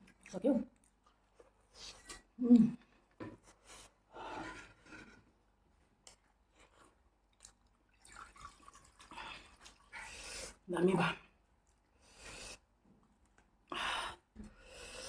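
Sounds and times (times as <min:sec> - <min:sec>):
person chewing food: 0:06.6 - 0:08.8.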